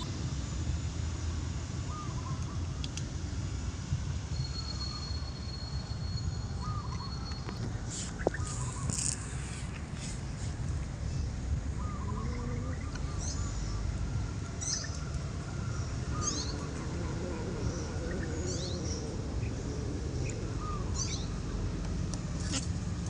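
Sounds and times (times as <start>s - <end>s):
steady low rumble: 0.0s - 23.0s.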